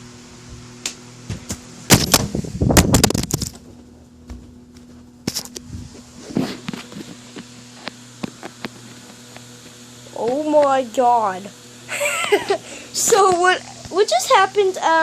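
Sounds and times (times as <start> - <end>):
phone falling and crashing: 1.9 - 3.6.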